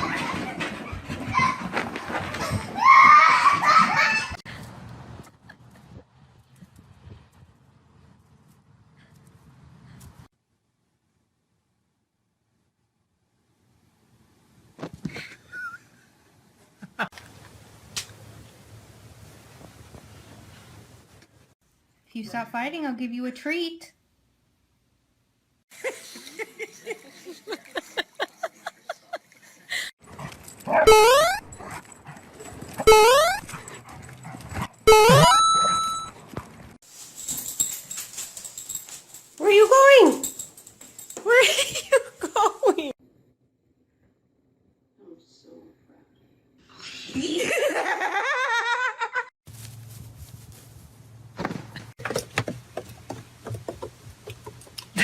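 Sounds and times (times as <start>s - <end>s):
dog yipping: 30.7s - 31.5s.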